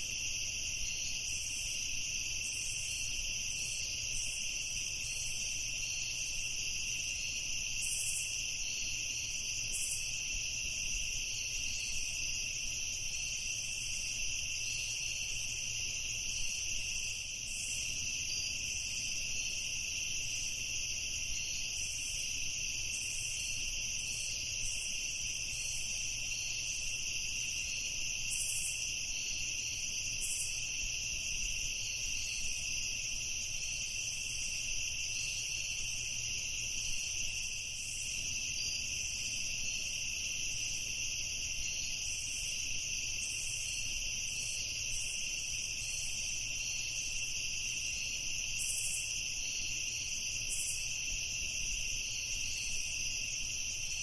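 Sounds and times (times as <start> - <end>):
high insect chirps: 0.0 - 54.0
insects trilling: 0.0 - 54.0.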